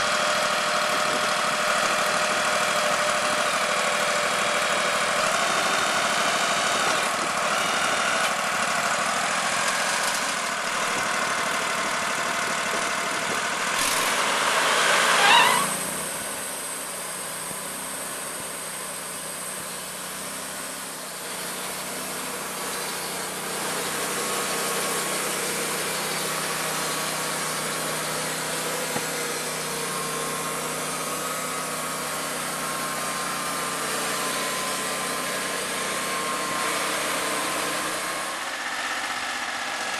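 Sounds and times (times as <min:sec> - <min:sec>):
sawmill engine running: 0:00.0 - 0:39.9
rising saw whine: 0:13.7 - 0:39.9.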